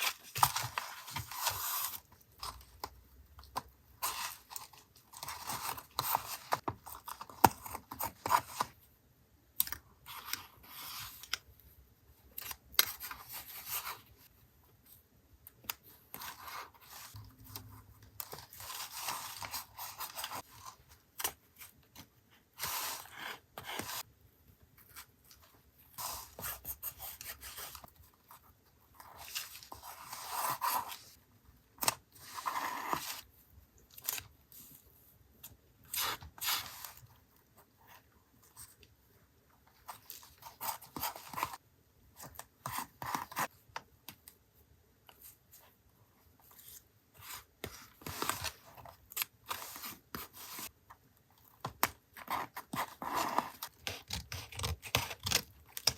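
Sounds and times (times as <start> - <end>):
scissors snipping paper: 51.6 - 55.9.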